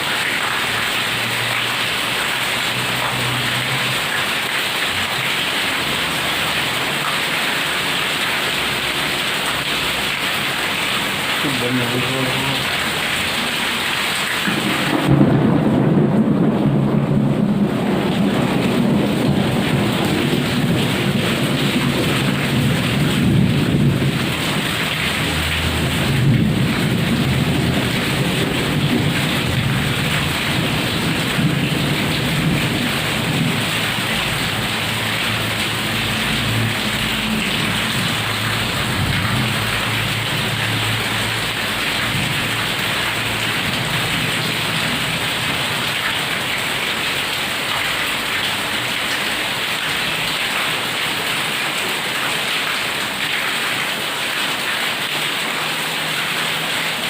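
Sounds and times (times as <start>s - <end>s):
heavy rain pouring: 0.0s - 57.0s
low thunder rumble: 14.6s - 34.7s.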